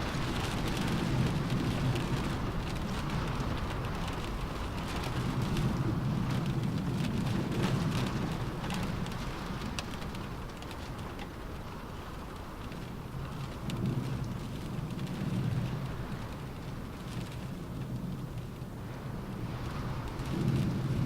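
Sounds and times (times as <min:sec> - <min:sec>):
raindrops tapping on car roof: 0:00.0 - 0:21.0.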